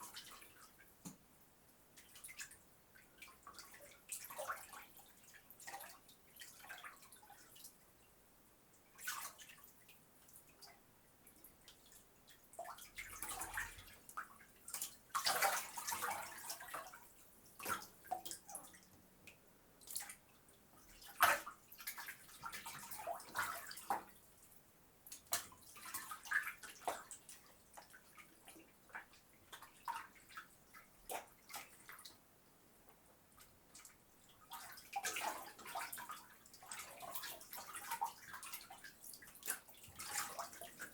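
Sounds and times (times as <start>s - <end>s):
water drips: 0.0s - 32.2s
water splashing in a bathtub: 0.0s - 40.9s.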